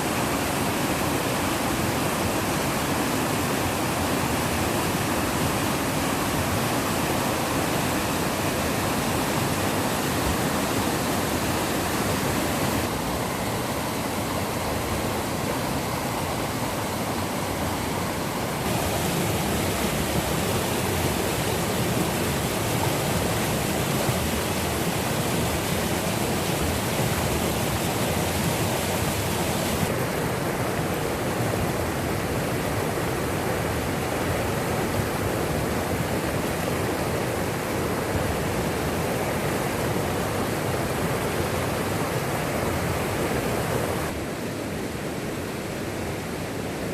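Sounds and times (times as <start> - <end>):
rushing water hiss: 0.0 - 46.9.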